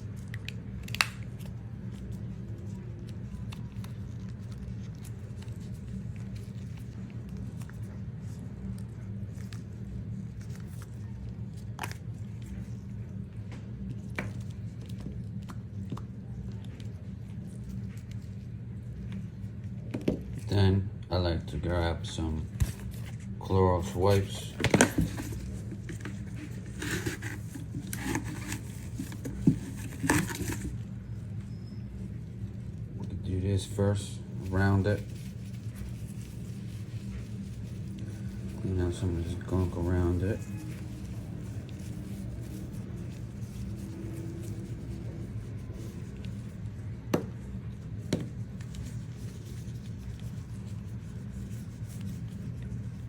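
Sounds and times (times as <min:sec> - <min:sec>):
steady low hum: 0:00.0 - 0:53.0
wipe rubbing plastic case: 0:22.2 - 0:30.9, 0:34.3 - 0:53.0.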